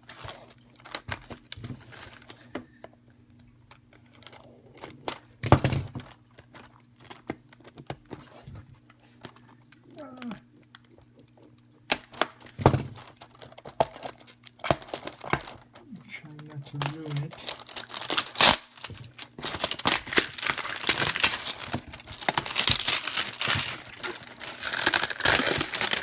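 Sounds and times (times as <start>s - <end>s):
plastic wrapping crinkling: 0.0s - 2.6s, 3.7s - 26.0s
rustling tears: 6.4s - 26.0s.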